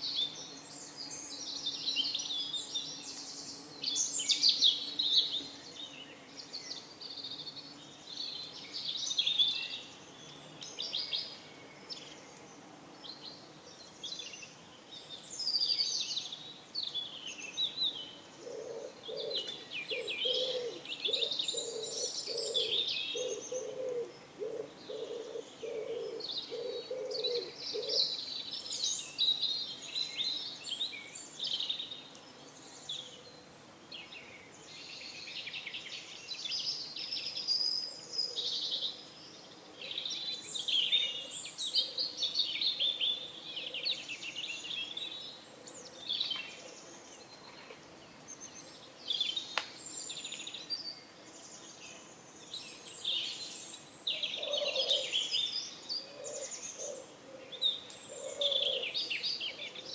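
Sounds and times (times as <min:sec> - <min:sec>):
small birds chirping: 0:00.0 - 0:59.9
pigeon cooing: 0:18.4 - 0:28.0, 0:54.4 - 0:55.2, 0:56.1 - 0:59.0.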